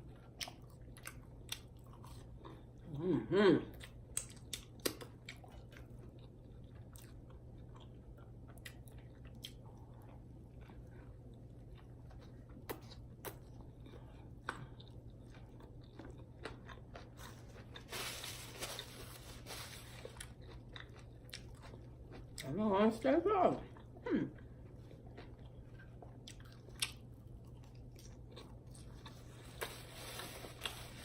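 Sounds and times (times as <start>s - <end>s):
person chewing food: 0.0s - 3.0s, 3.7s - 22.5s, 23.6s - 31.0s.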